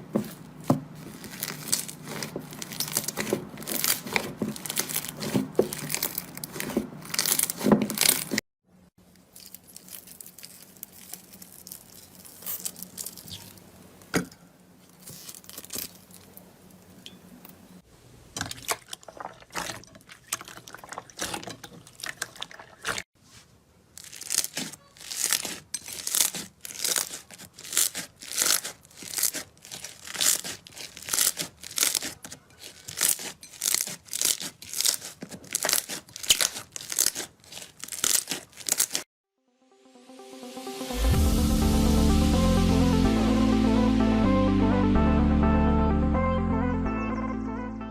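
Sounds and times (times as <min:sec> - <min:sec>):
slime squished by hand: 0:00.1 - 0:08.4, 0:24.0 - 0:39.0.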